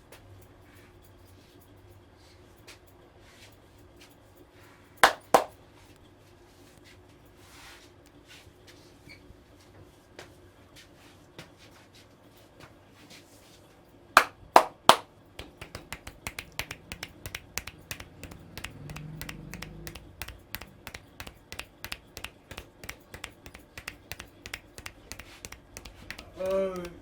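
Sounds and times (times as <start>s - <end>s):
sharp hand strikes on head: 5.0s - 5.5s
light clicking taps: 15.4s - 27.0s.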